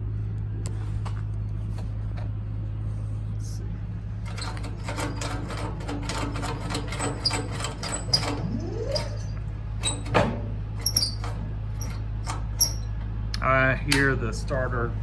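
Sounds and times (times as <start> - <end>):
starter motor whine: 4.2 - 13.2.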